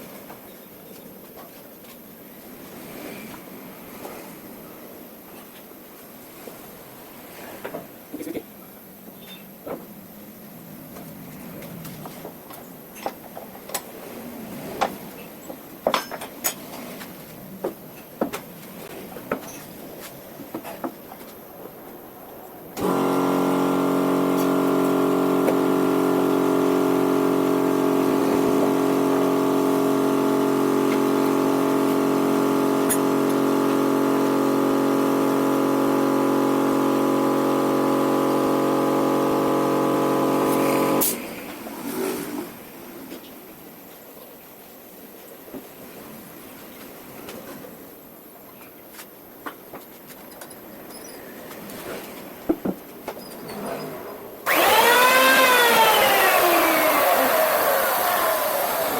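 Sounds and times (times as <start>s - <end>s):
electric motor running: 22.8s - 41.2s, 54.5s - 58.9s.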